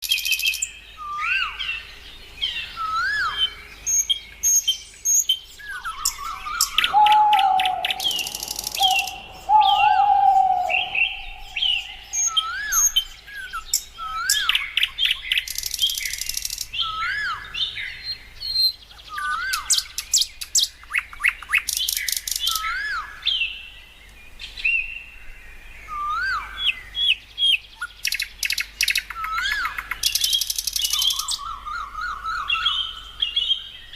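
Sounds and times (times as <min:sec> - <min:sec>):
birds chirping and calling: 0:00.0 - 0:33.9
rapid high bird trills: 0:05.9 - 0:14.4.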